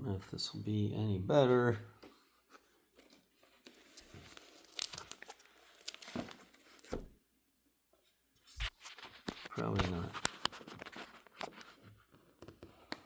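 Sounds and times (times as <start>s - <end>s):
plastic pages crinkling: 2.5s - 7.1s, 8.6s - 12.6s.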